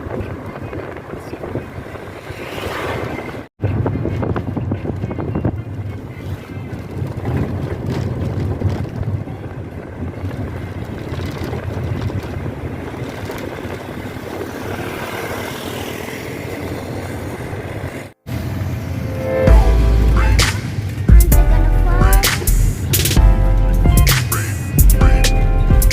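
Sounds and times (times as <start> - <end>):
road and wind noise: 0.0 - 25.9
vehicle engine rumble: 3.1 - 25.9
music: 19.1 - 25.9.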